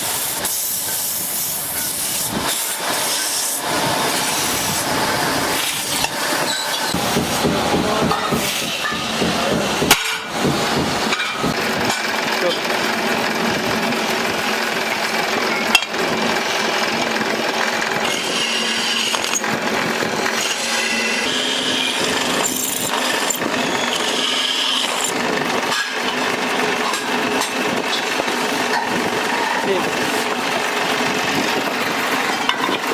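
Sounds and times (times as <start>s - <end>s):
tools rasping and rubbing: 28.7s - 30.6s.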